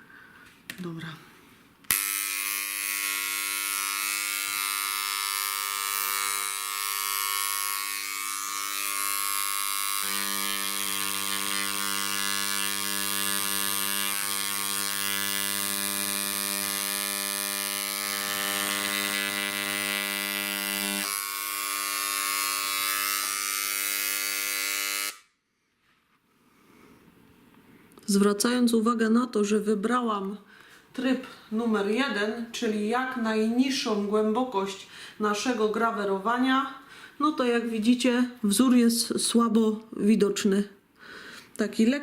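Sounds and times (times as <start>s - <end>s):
electric engraver buzzing on wood: 1.9s - 25.3s.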